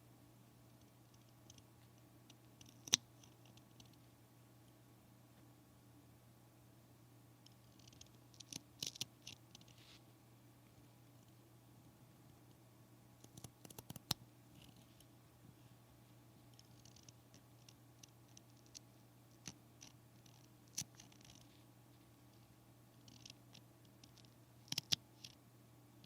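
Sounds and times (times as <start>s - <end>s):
steady low hum: 0.0s - 26.0s
soft rustles: 9.6s - 10.1s
sharp clicks: 13.2s - 14.2s.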